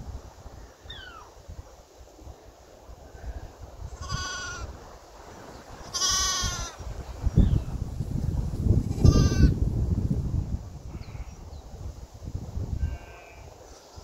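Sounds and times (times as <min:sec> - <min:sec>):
low wind rumble: 0:00.0 - 0:14.0
lambs bleating: 0:04.0 - 0:04.7, 0:05.8 - 0:06.8, 0:09.0 - 0:09.5, 0:12.8 - 0:14.0.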